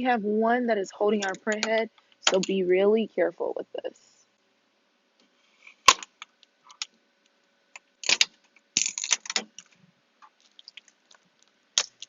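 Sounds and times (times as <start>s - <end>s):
tape rustling and scraping: 5.2s - 12.0s
sharp plastic clicks: 7.8s - 11.0s, 11.8s - 12.0s.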